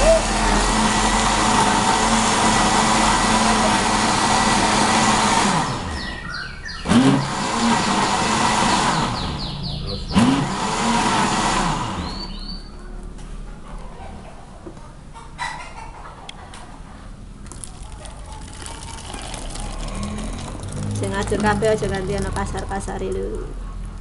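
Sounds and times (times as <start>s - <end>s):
electric blender motor: 0.0s - 6.1s, 6.9s - 9.4s, 10.1s - 12.4s, 18.6s - 22.6s.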